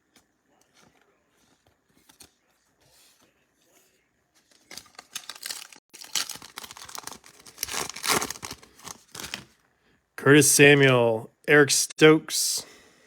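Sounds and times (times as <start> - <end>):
wrapper tearing and crinkling: 4.6 - 9.6.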